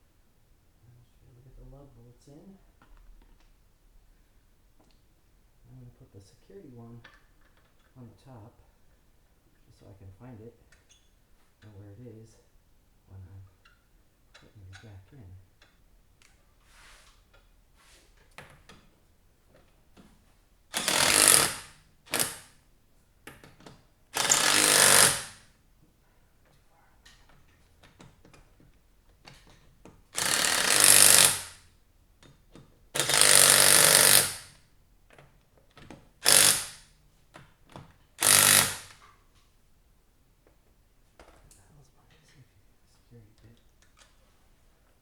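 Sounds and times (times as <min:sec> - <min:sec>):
impact wrench hammering: 0:20.7 - 0:22.5, 0:24.2 - 0:25.4, 0:30.2 - 0:31.6, 0:33.0 - 0:34.5, 0:36.2 - 0:36.8, 0:38.2 - 0:39.0.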